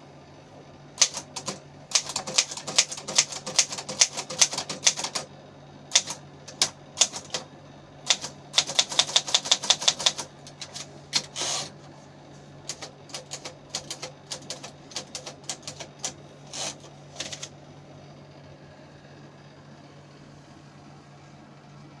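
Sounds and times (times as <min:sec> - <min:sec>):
steady low hum: 0:00.0 - 0:22.0
manual typewriter key strikes: 0:01.0 - 0:05.3, 0:05.9 - 0:07.4, 0:08.1 - 0:11.7, 0:12.7 - 0:17.5.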